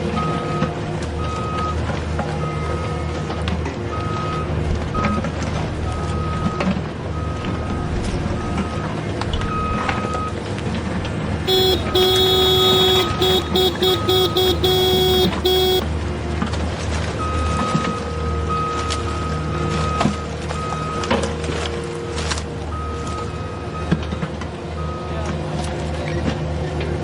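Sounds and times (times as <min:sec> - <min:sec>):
horn toots: 0:11.5 - 0:15.8
reversing beeps: 0:11.5 - 0:15.8.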